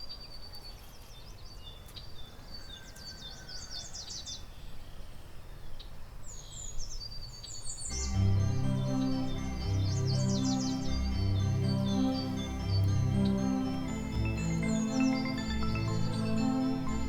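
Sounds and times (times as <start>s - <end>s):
songbirds chirping: 0.0s - 17.0s
music: 7.9s - 17.0s.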